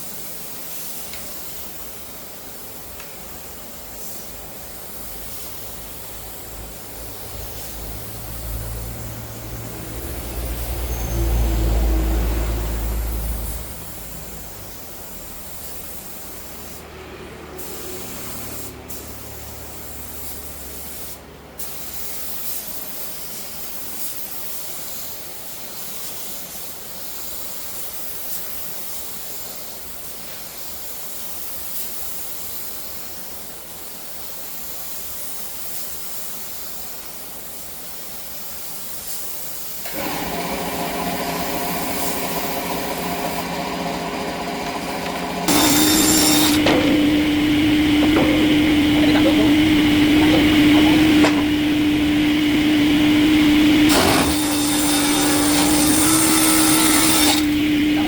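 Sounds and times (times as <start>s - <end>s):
wood-processing machinery hissing: 2.6s - 20.8s, 39.8s - 58.0s
machine hum: 7.2s - 14.7s, 39.9s - 58.0s.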